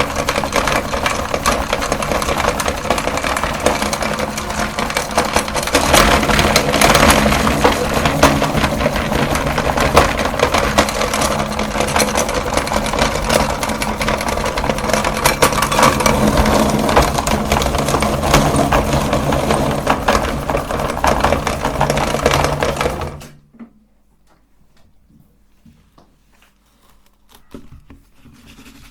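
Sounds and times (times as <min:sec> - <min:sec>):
meat grinder motor humming: 0:00.0 - 0:23.4.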